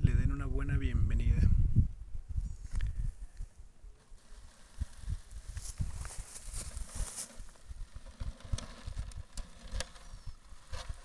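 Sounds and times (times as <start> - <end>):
rustling in dry leaves: 4.0 - 11.0.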